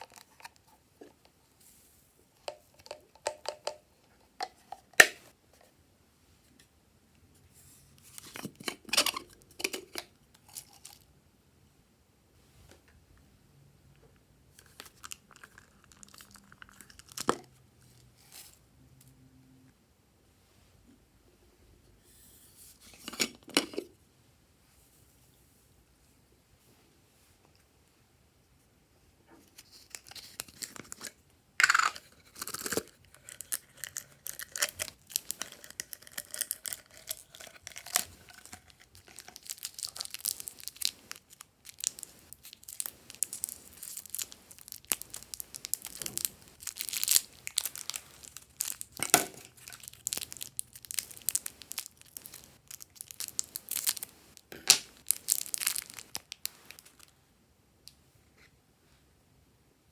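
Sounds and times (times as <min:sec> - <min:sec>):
slime crackling and popping: 0:32.4 - 0:57.1.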